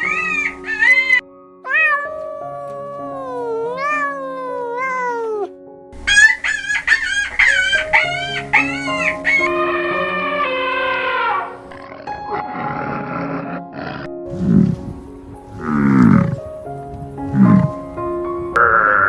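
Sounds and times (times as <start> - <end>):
background music with sustained notes: 0.0 - 19.0
cat meowing: 1.7 - 5.5, 9.4 - 11.7, 14.3 - 18.0.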